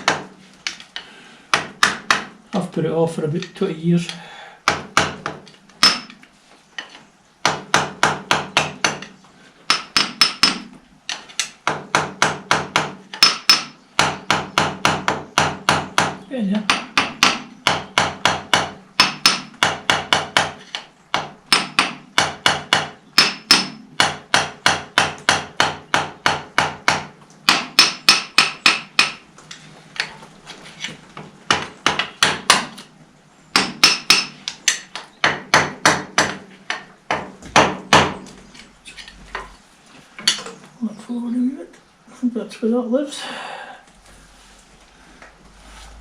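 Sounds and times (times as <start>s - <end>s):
hammer tapping: 1.5s - 2.3s, 4.6s - 6.2s, 9.7s - 29.2s, 33.5s - 38.2s.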